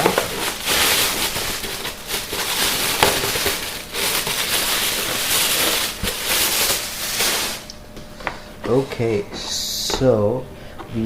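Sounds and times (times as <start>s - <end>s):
plastic bag crinkling and rustling: 0.0s - 7.7s
sharp plastic crackles: 0.0s - 7.8s.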